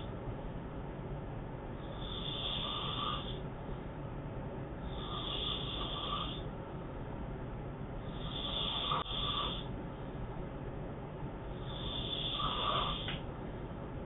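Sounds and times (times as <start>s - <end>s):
man snoring: 1.8s - 3.4s, 4.8s - 6.5s, 8.0s - 9.7s, 11.6s - 13.2s.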